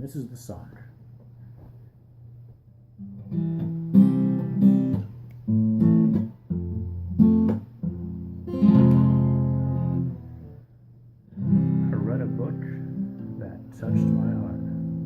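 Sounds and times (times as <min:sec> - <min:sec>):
acoustic guitar strumming chords: 0:03.0 - 0:10.6, 0:11.3 - 0:15.0.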